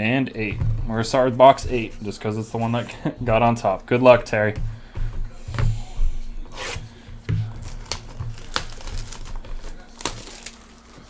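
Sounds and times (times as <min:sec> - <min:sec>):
plastic wrapping crinkling and tearing: 0:06.5 - 0:11.0.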